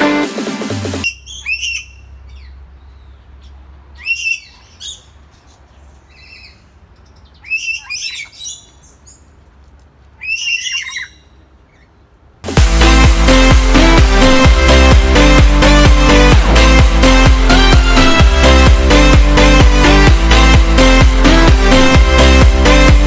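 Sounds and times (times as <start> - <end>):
bird calling in short bursts: 1.0 - 6.6, 7.2 - 9.1, 10.2 - 12.0.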